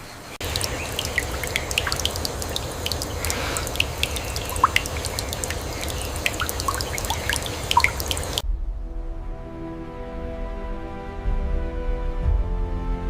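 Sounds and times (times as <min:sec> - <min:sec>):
rain falling: 0:00.4 - 0:08.4
raindrops landing close by: 0:00.4 - 0:08.4.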